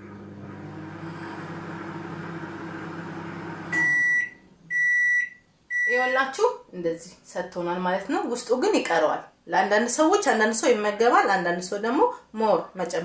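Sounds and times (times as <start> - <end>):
microwave oven humming: 0.0 - 5.4
high beeps: 3.8 - 6.0.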